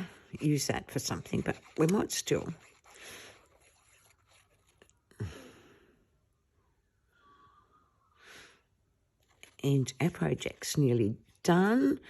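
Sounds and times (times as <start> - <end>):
paper rustling: 0.9 - 5.1, 9.2 - 10.6.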